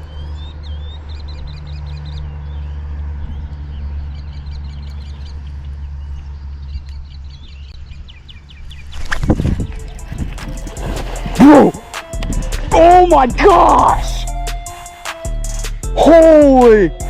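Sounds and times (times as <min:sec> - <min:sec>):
small birds chirping: 0:00.0 - 0:10.1.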